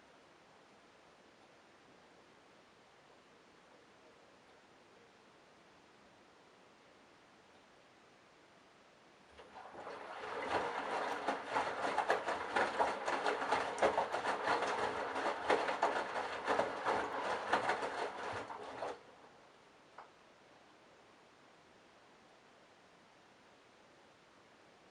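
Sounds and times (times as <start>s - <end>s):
knocks of tumbling laundry: 9.3s - 19.1s
washing machine motor: 9.3s - 19.1s.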